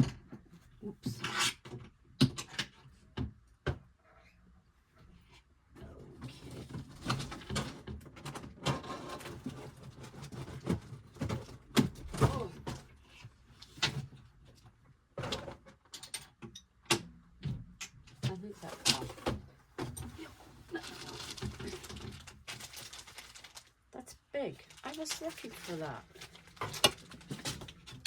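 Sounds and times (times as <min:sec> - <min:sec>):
craft supplies rustling: 0:18.3 - 0:28.0.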